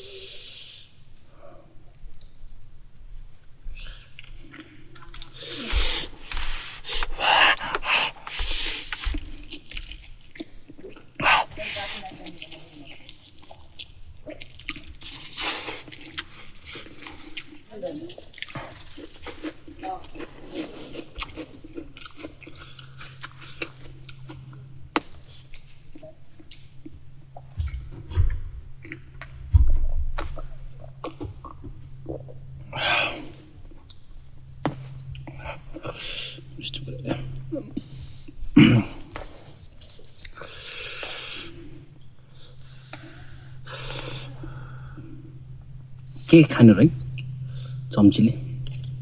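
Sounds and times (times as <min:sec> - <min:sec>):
chewing and eating: 0:01.2 - 0:49.0
person slurping: 0:05.1 - 0:09.0
low thumps: 0:27.2 - 0:32.6.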